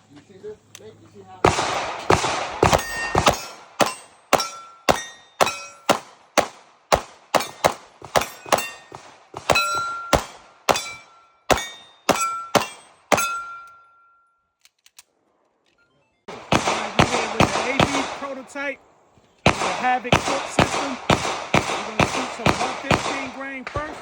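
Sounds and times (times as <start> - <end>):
pistol shots: 1.4 - 13.8, 16.3 - 18.7, 19.4 - 24.0
steel targets ringing: 2.6 - 6.0, 7.4 - 14.4.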